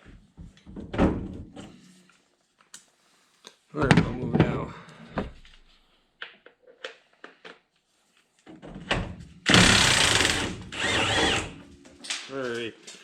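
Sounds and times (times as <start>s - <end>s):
hissing power tool: 9.5s - 11.6s.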